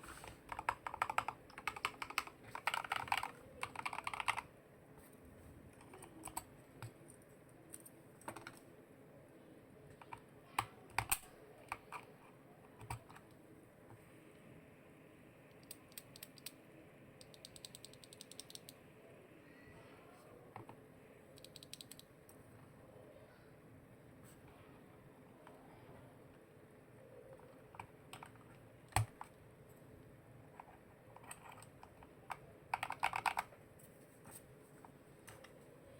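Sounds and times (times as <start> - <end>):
mechanical keyboard typing: 0.2 - 4.5, 5.8 - 7.1, 7.7 - 8.6, 9.9 - 12.1, 12.8 - 13.3, 17.2 - 18.8, 21.3 - 22.1, 27.1 - 29.4, 30.6 - 33.6.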